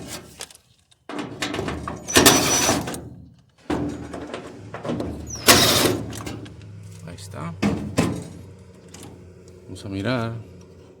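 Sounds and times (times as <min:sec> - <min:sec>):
metal parts scraping and clattering: 0:00.0 - 0:07.1.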